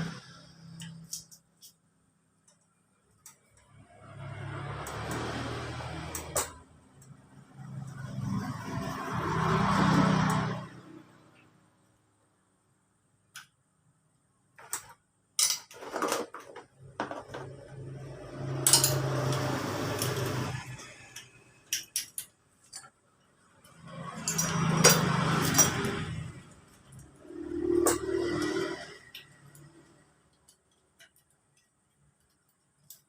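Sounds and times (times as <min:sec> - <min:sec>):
rattling and scraping: 0:14.6 - 0:29.9
metal tools clinking: 0:18.5 - 0:22.9, 0:23.6 - 0:27.0.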